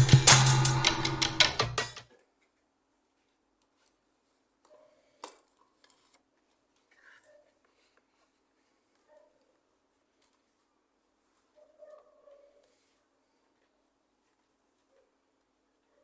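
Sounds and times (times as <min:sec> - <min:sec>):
background music: 0:00.0 - 0:02.0.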